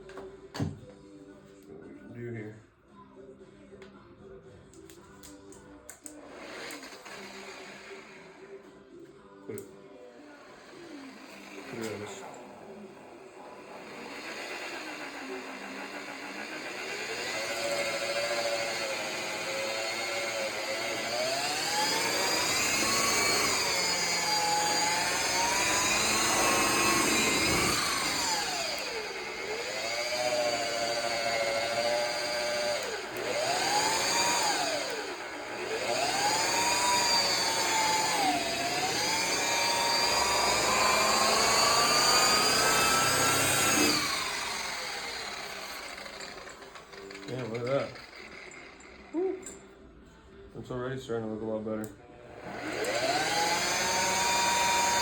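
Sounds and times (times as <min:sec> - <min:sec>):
electric polisher motor whining: 0:06.3 - 0:08.6, 0:10.3 - 0:49.2, 0:52.3 - 0:55.0.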